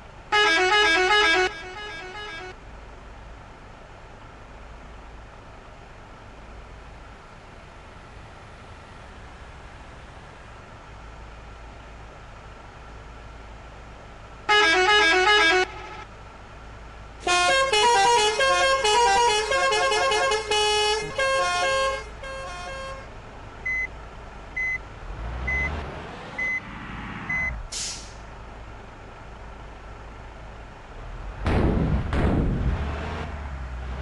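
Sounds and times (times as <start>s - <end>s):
vehicle engine: 0.0s - 34.0s
multi-tone air horns melody: 0.3s - 2.6s, 14.5s - 16.0s, 17.2s - 23.1s
short beeps: 23.7s - 23.9s, 25.5s - 25.7s, 26.4s - 26.6s, 27.3s - 27.6s
brief hiss: 27.7s - 28.2s.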